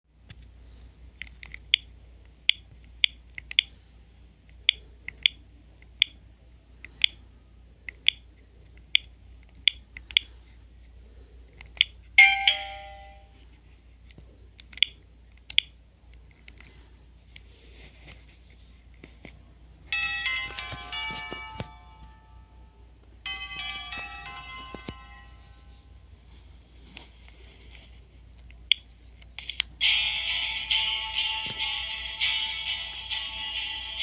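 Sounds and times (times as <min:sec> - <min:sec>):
phone chime: 0:12.2 - 0:13.4, 0:19.9 - 0:26.0.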